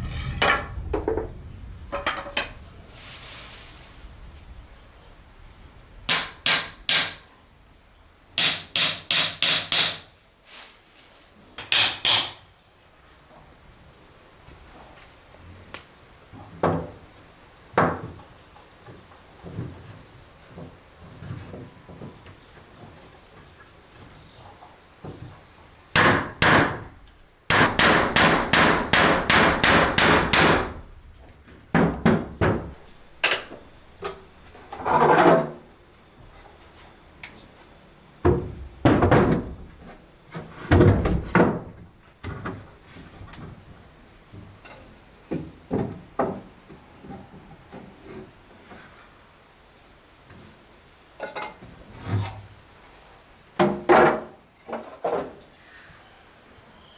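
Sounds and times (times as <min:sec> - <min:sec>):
hammer blows on wood: 0:27.5 - 0:30.8
insect chirring: 0:32.5 - 0:40.4.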